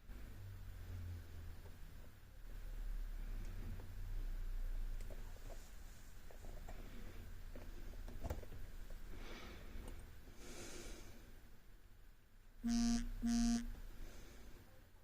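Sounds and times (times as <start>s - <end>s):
soft breathing: 5.2s - 8.1s, 8.9s - 11.6s, 13.9s - 15.0s
loud low buzzes: 12.6s - 13.9s.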